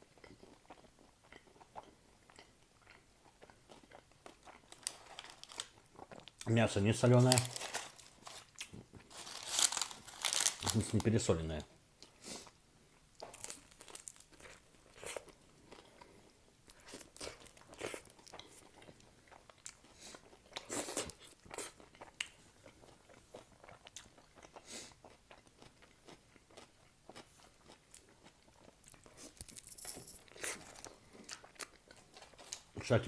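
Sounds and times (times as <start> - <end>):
chewing and biting food: 0.0 - 6.5, 13.2 - 29.6, 30.2 - 32.8.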